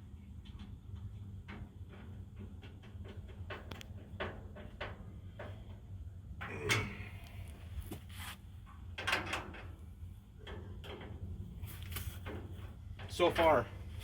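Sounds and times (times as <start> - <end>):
faint low hum: 6.4 - 8.1.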